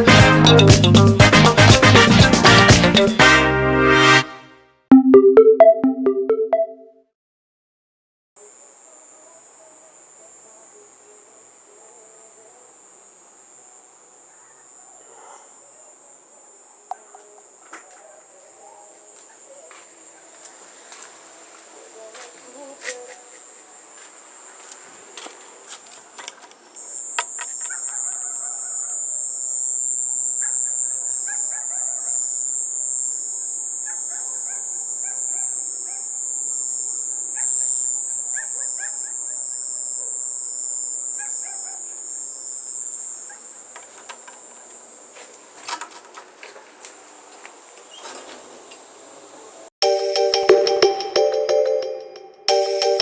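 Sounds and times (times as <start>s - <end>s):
shrill pulsing phone ringtone: 4.9s - 6.9s, 49.8s - 53.0s.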